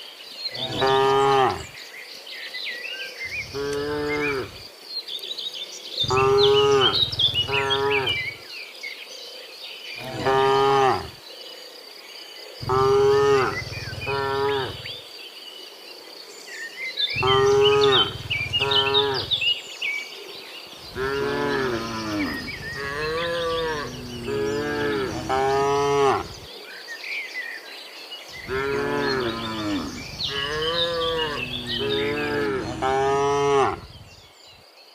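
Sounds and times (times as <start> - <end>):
cows mooing: 0.6 - 1.7, 3.3 - 4.6, 6.0 - 8.4, 10.0 - 11.2, 12.6 - 14.9, 17.2 - 19.5, 20.9 - 26.5, 28.4 - 34.1.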